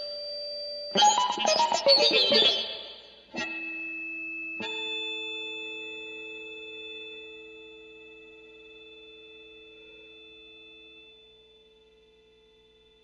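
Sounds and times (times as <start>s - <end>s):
held guitar chords ringing: 0.9s - 11.7s
plucked guitar music: 1.0s - 3.6s.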